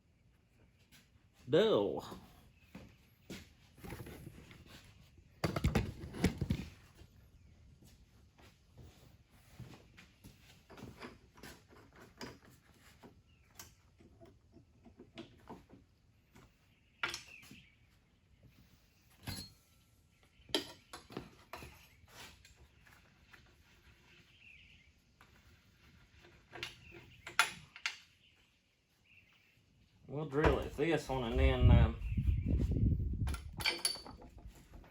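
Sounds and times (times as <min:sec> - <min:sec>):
metal tools clinking and knocking: 0:19.2 - 0:19.7, 0:33.3 - 0:34.9.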